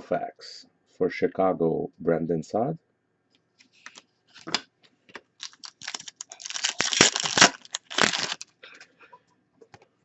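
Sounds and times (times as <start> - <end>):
cards rustling and sliding: 3.6 - 4.6.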